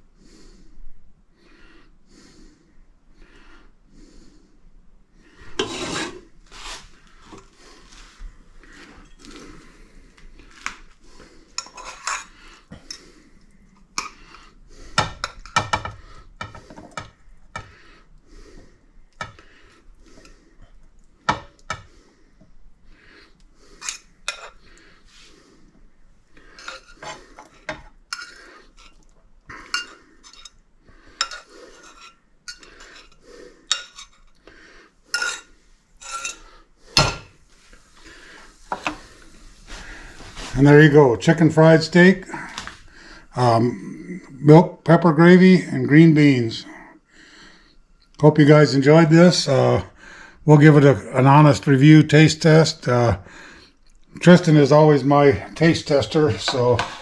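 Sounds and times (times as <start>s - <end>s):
metal utensils clinking on plates: 11.6s - 12.3s, 31.2s - 34.4s, 35.2s - 36.4s.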